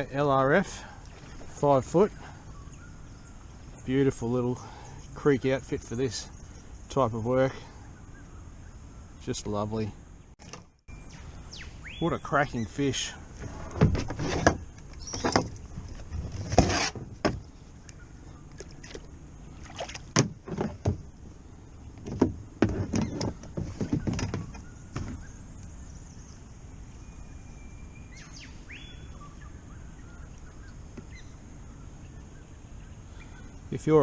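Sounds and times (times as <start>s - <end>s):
gear knocking in a kayak: 22.0s - 25.2s.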